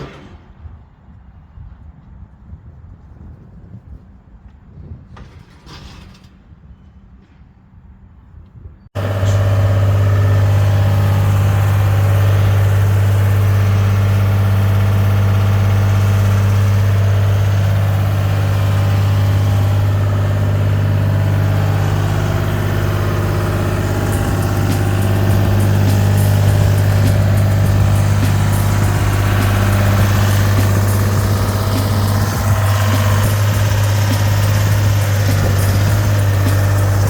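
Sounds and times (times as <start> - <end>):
diesel engine running: 9.0 - 37.0.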